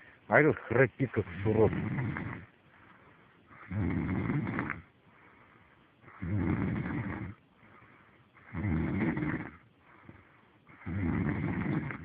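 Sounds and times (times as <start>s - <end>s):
man snoring: 1.3s - 2.5s, 3.6s - 4.9s, 6.1s - 7.4s, 8.4s - 9.6s, 10.7s - 12.0s.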